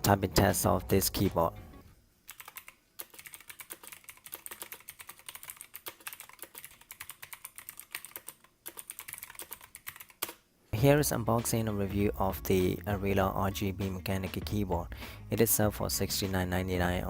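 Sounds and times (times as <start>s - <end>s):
mechanical keyboard typing: 2.3s - 10.4s.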